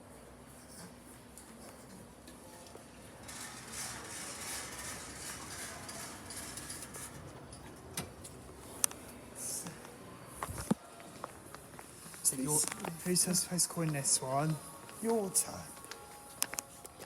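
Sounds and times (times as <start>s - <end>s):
lift mechanism rushing: 3.2s - 8.6s.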